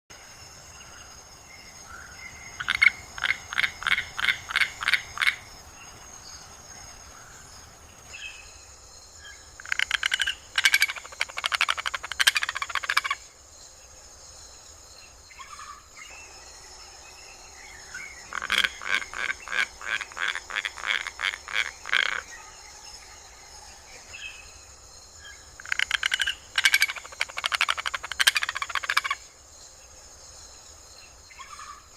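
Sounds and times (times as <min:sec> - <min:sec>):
high-pitched insect drone: 0:00.2 - 0:31.9
toucan calling: 0:02.3 - 0:05.5, 0:09.6 - 0:13.2, 0:15.4 - 0:22.6, 0:25.6 - 0:29.2.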